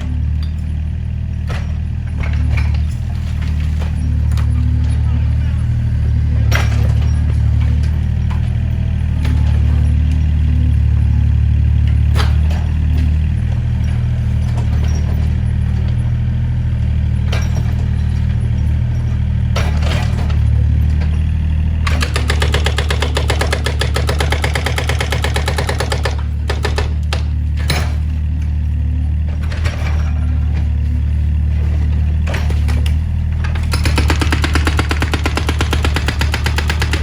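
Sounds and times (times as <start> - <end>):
excavator diesel engine running: 0.0 - 37.0
demolition debris knocks and cracks: 1.4 - 10.4, 11.8 - 37.0
fast rattling clatter: 33.8 - 37.0.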